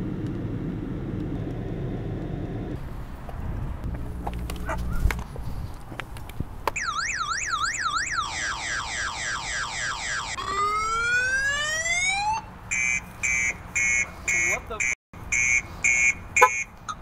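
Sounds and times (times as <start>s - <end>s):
car alarm tones from speaker: 6.8s - 11.6s, 12.7s - 16.7s.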